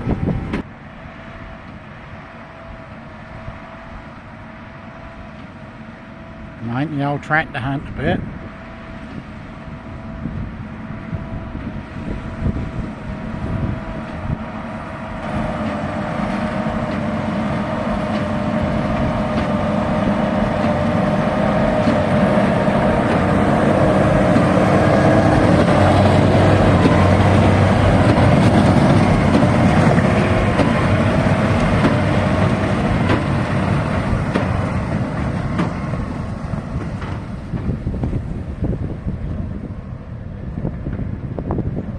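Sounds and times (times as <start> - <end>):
baler whine: 0.0 - 41.9
tractor engine under load: 11.6 - 39.7.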